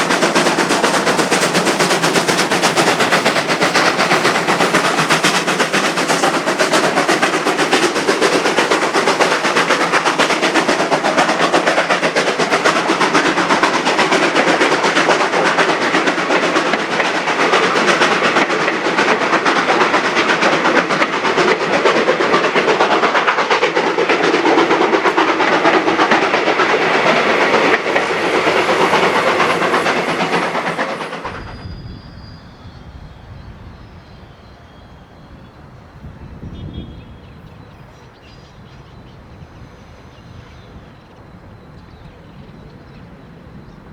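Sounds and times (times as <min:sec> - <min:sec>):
train wheels rushing on rails: 0:00.0 - 0:43.9.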